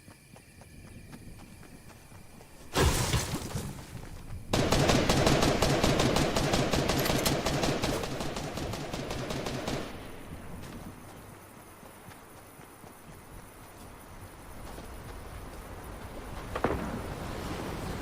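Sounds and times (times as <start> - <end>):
rapid gunfire: 4.5 - 10.0.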